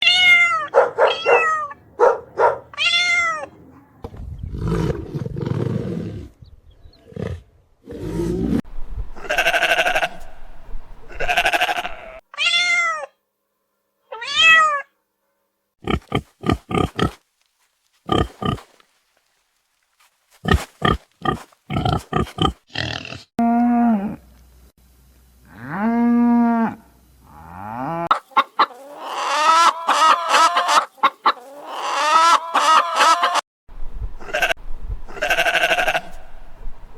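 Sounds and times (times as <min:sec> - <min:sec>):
low rough animal noise: 0:15.8 - 0:17.2, 0:17.9 - 0:23.2
pitched falling animal calls: 0:18.0 - 0:19.4, 0:20.0 - 0:22.6.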